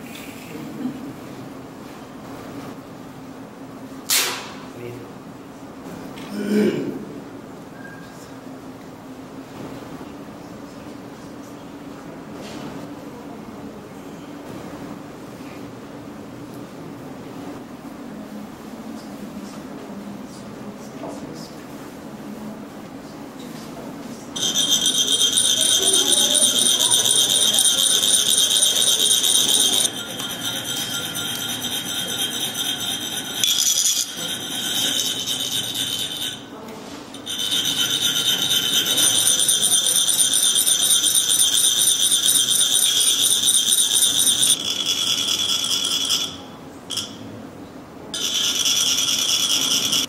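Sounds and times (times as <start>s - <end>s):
metal rod rasping metal funnel: 24.4s - 36.5s, 37.1s - 47.2s, 48.2s - 50.0s.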